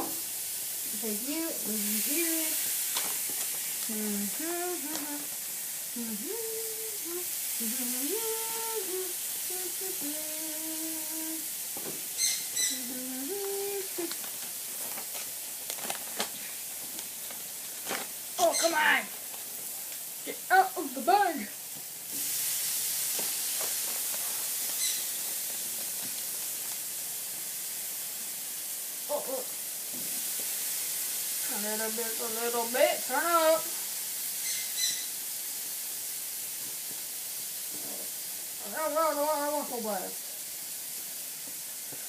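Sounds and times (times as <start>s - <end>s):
food sizzling on a grill: 0.0s - 42.0s
person humming a slow tune: 3.9s - 5.4s, 6.0s - 11.5s, 12.6s - 14.2s
short high chirp: 34.4s - 35.1s.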